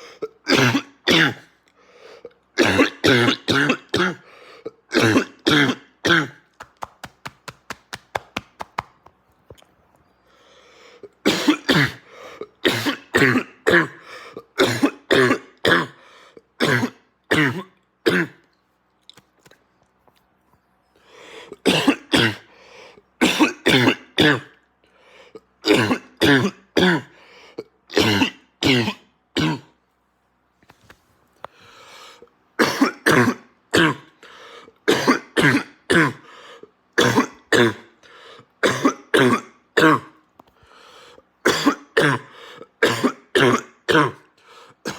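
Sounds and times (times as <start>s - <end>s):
man coughing harshly: 0.2s - 1.5s, 2.6s - 4.3s, 4.9s - 6.5s, 11.2s - 16.0s, 16.6s - 18.4s, 21.6s - 22.5s, 23.2s - 24.6s, 25.6s - 27.2s, 27.9s - 29.8s, 32.6s - 34.2s, 34.9s - 36.3s, 37.0s - 38.0s, 38.6s - 40.2s, 41.5s - 44.9s.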